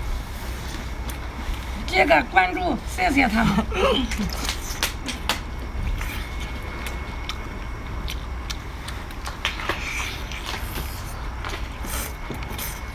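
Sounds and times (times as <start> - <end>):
low steady hum: 0.0 - 12.9
seafood being chewed: 0.6 - 1.7, 3.7 - 12.9.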